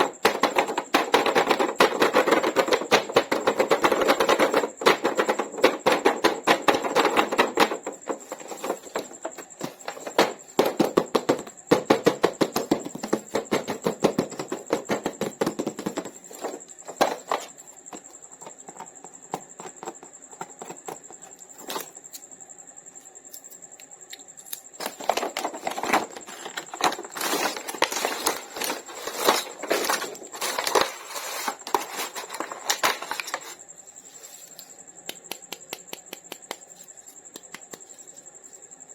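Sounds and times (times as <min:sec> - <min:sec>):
faint high whine: 0:04.0 - 0:38.9
plastic packaging crackling: 0:24.8 - 0:33.6.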